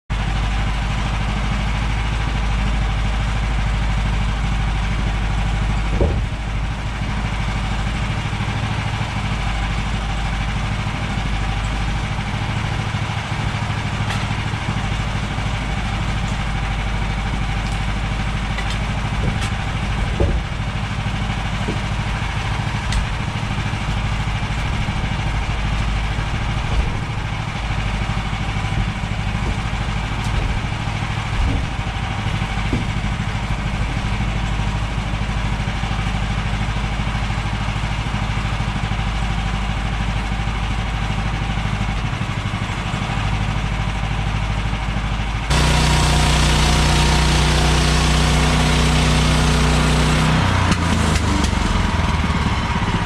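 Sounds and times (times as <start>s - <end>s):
sawmill gas engine running: 0.1s - 53.0s
short knocks: 5.9s - 6.5s, 18.5s - 23.6s, 24.6s - 34.1s.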